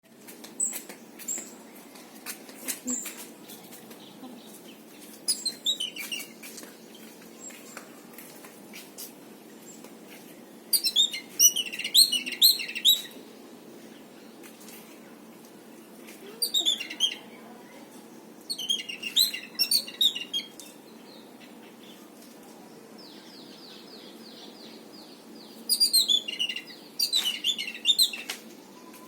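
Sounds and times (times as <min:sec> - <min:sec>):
animal chirping: 0:10.8 - 0:13.1, 0:16.4 - 0:17.2, 0:18.5 - 0:20.5, 0:25.7 - 0:28.2.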